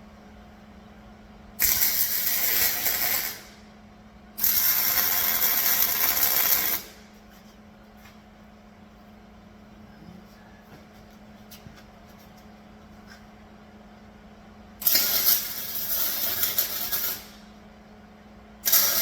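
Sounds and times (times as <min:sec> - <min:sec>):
crackling welding arc: 0:01.6 - 0:03.7, 0:04.4 - 0:07.2, 0:14.8 - 0:17.6, 0:18.6 - 0:19.0.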